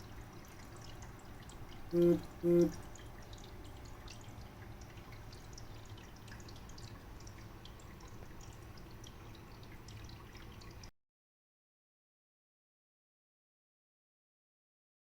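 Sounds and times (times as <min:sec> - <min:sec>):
coolant trickling and bubbling: 0:00.0 - 0:10.9
low pump hum: 0:00.0 - 0:10.9.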